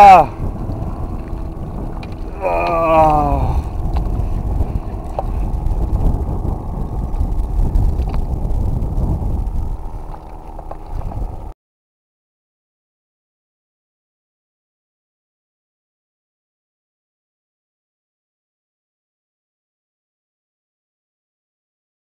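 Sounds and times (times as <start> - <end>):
wind rumble on microphone: 0.0 - 11.6.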